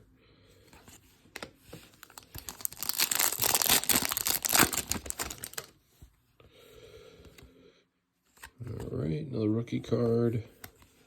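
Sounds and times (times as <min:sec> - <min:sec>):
foil wrapper crinkling and tearing: 0:02.0 - 0:05.7.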